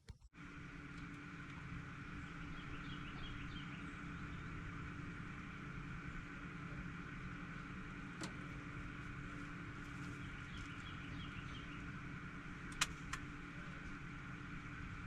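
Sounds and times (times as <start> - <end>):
faint engine hum: 0.3 - 15.0
small bird chirping: 2.2 - 4.6, 9.9 - 11.9
sharp clicks: 12.7 - 13.3.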